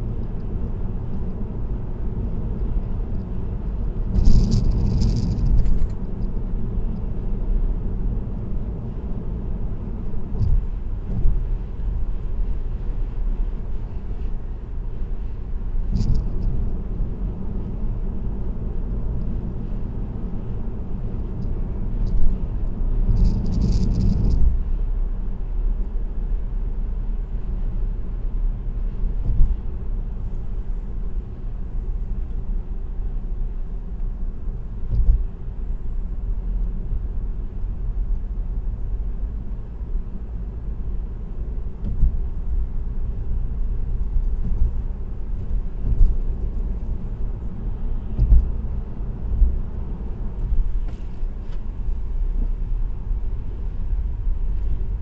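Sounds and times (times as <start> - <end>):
tyre and road rumble: 0.0 - 55.0
knocks from road bumps: 34.9 - 35.3, 45.4 - 46.6, 48.0 - 49.6.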